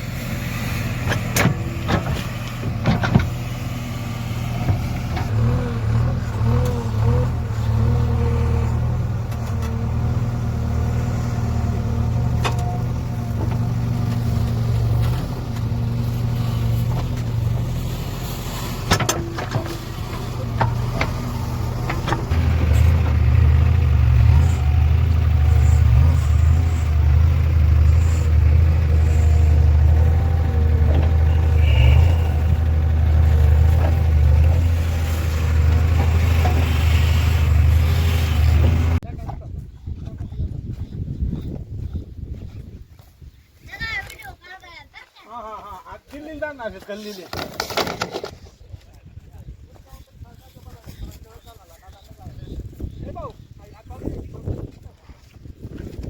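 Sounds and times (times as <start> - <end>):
diesel engine running: 0.0 - 39.0.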